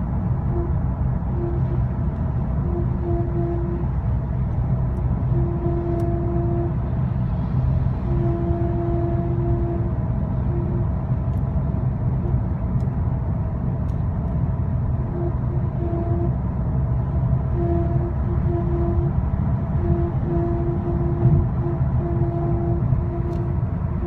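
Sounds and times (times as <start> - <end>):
road and engine rumble: 0.0 - 24.0
whining tone: 17.4 - 24.0.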